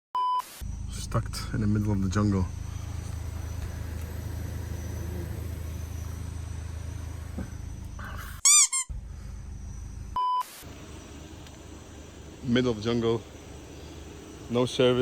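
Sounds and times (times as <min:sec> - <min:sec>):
short flat beep: 0:00.2 - 0:00.5, 0:10.2 - 0:10.5
low steady hum: 0:00.6 - 0:15.0
high squeaky chirps: 0:02.5 - 0:10.1.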